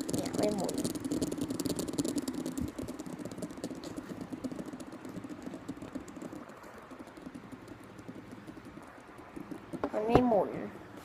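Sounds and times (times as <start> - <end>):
fidget spinner whirring: 0.0 - 11.0.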